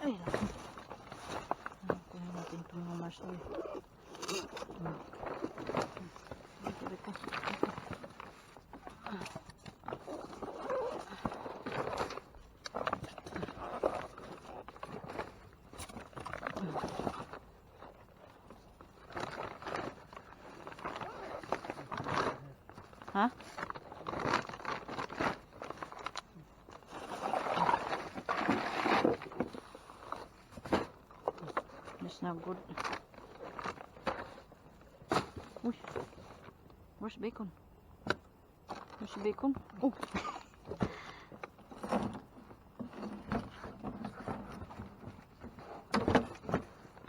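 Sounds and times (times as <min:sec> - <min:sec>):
plastic crinkling rustle: 0:00.0 - 0:36.8.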